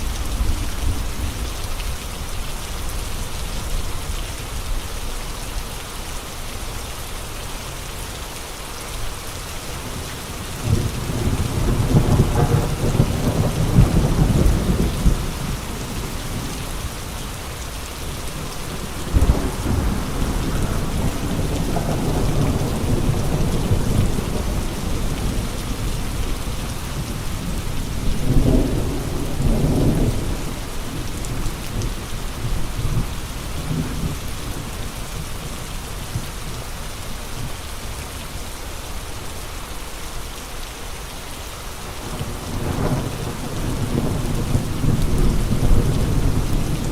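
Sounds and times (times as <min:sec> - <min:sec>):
heavy rain: 0:00.0 - 0:46.9
gusting wind: 0:09.4 - 0:37.7.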